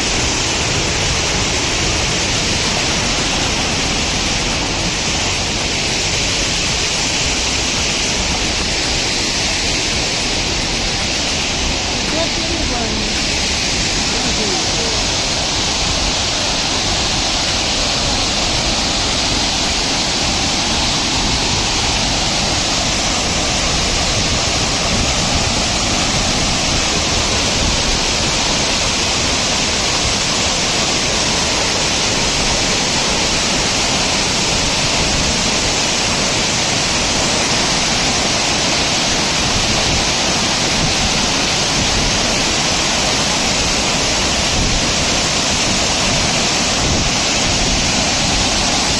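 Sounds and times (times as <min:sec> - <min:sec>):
waterfall rushing: 0:00.0 - 0:48.9.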